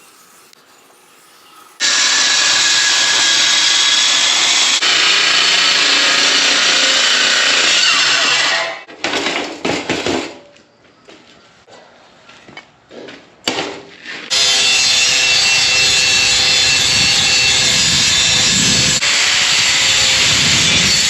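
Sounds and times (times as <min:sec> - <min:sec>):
power tool cutting metal sheet: 0:00.0 - 0:08.9, 0:14.3 - 0:21.0.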